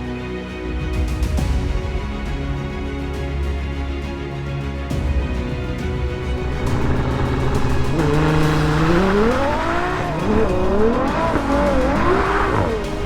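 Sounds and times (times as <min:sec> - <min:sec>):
car engine revving: 0:06.1 - 0:13.0.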